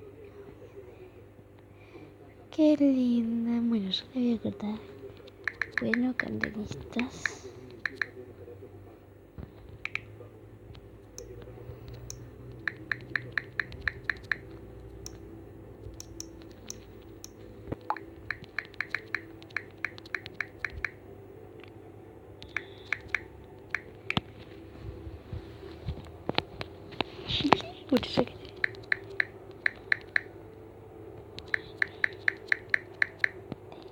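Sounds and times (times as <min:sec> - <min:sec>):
steady low hum: 0:00.0 - 0:33.9
touchscreen key-tap clicks: 0:05.4 - 0:06.6, 0:07.2 - 0:08.1, 0:09.8 - 0:10.0, 0:11.9 - 0:14.4, 0:15.9 - 0:21.0, 0:22.4 - 0:24.3, 0:28.5 - 0:30.3, 0:31.4 - 0:33.4.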